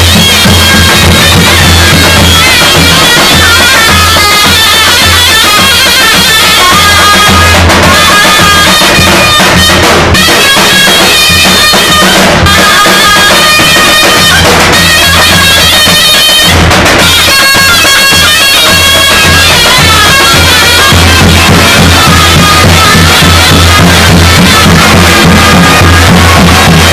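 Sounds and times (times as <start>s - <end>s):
bass drum beat: 0.0s - 8.0s, 18.8s - 26.9s
shrill double-reed pipe melody: 0.0s - 26.9s.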